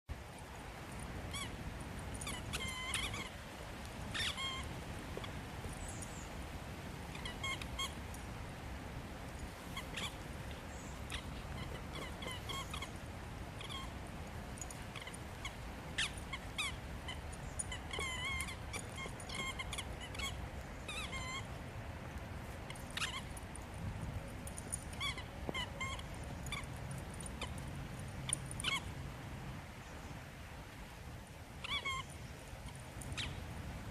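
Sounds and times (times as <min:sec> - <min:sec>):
squeaky dog toy squeaking: 0:02.2 - 0:03.3, 0:04.1 - 0:04.7, 0:07.1 - 0:08.0, 0:09.8 - 0:10.2, 0:11.1 - 0:12.9, 0:16.0 - 0:21.5, 0:22.8 - 0:23.4, 0:24.9 - 0:26.8, 0:28.3 - 0:28.9, 0:31.6 - 0:32.1.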